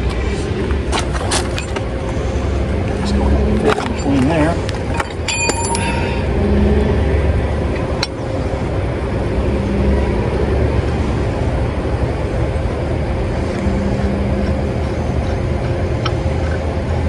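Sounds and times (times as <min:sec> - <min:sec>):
truck engine idling: 0:00.0 - 0:17.0.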